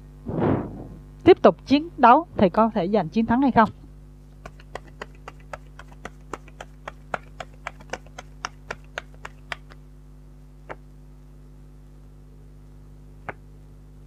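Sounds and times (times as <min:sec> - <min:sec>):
low mains hum: 0:00.0 - 0:14.0
cards tapped down clicking: 0:04.4 - 0:09.8.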